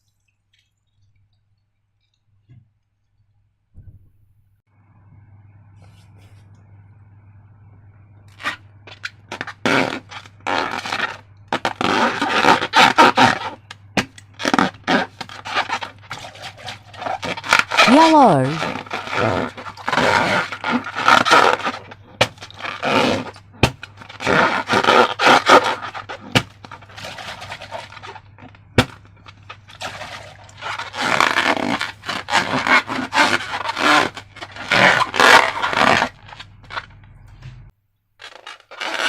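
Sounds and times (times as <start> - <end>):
scraping and rubbing of slime: 8.3 - 39.0.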